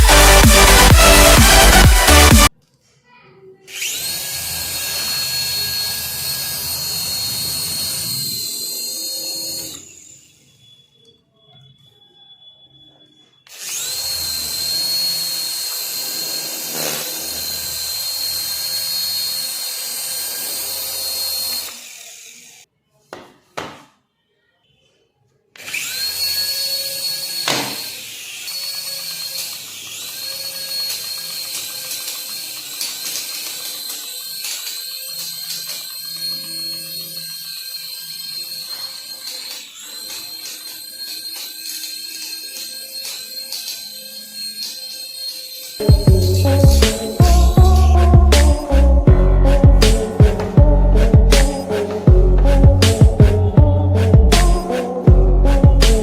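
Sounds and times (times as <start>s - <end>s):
background music: 0.0s - 2.5s, 45.8s - 56.0s
small electric motor whining: 3.7s - 12.0s, 12.9s - 22.7s, 25.6s - 56.0s.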